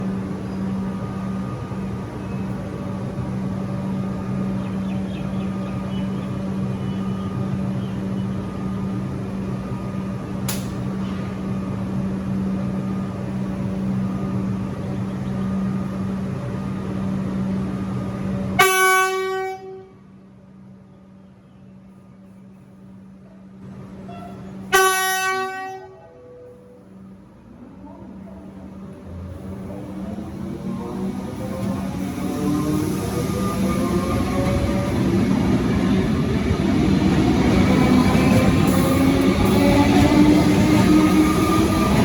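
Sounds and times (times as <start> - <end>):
electric train running hum: 0.0 - 42.0
sharp click: 10.5 - 10.8
train horn blast: 18.6 - 20.0, 24.0 - 26.8.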